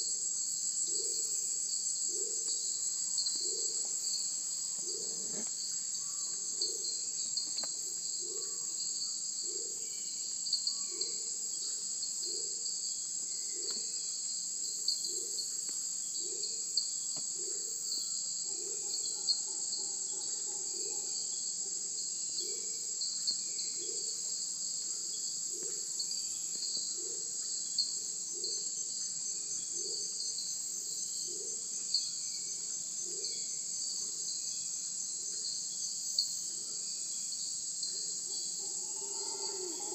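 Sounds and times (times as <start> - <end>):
insects buzzing: 37.0 - 39.9.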